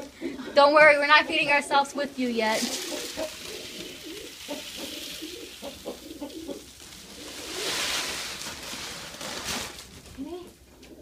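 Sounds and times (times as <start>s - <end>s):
rustling noise: 2.3s - 10.4s
pigeons cooing: 2.5s - 8.0s, 10.7s - 11.0s.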